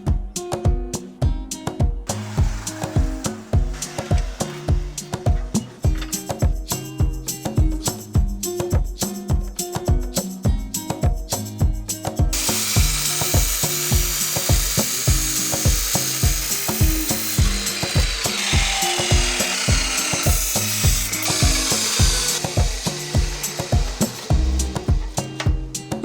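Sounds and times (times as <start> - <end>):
background music with beat: 0.0 - 26.0
power tool on steel: 2.1 - 6.3, 12.4 - 25.6.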